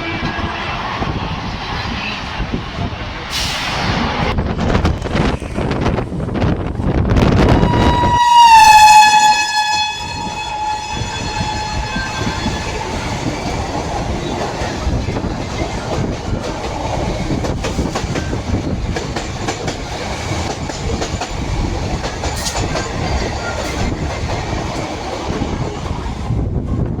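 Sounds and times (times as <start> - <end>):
train horn: 0.0 - 0.7, 7.5 - 13.3
train rushing past: 0.0 - 27.0.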